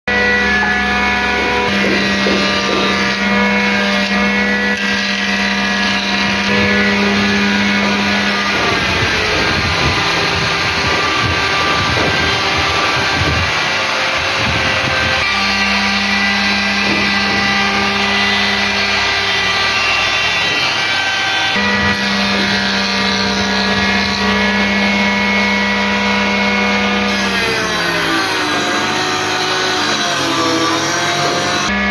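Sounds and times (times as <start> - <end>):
woodworking machine motor hum: 0.1 - 31.9.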